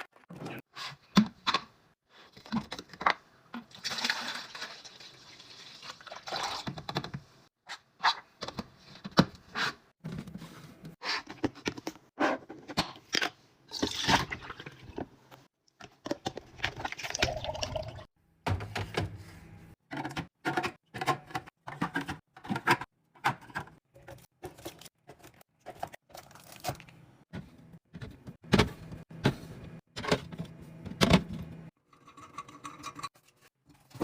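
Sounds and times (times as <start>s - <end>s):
liquid pouring and sloshing: 3.6s - 7.0s, 13.7s - 15.4s, 16.0s - 18.1s
containers clattering and scraping: 10.0s - 19.2s, 28.0s - 34.0s.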